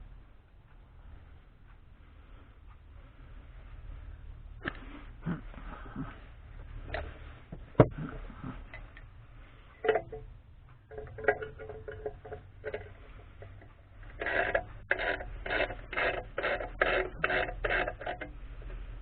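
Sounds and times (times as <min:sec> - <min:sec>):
light clicks and knocks: 0:09.7 - 0:18.9.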